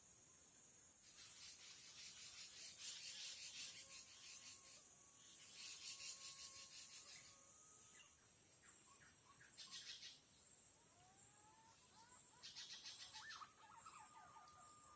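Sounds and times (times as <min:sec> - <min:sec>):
insects high-pitched whine: 0:00.0 - 0:14.9
insects rasping pulsed buzzing: 0:00.0 - 0:14.9.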